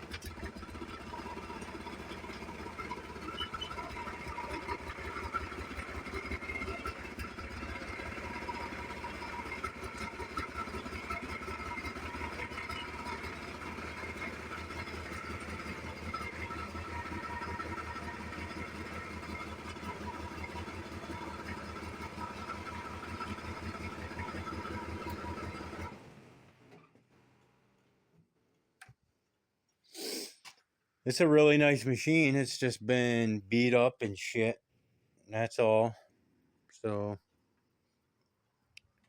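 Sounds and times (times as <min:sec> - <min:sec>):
engine idling: 0:00.0 - 0:26.6.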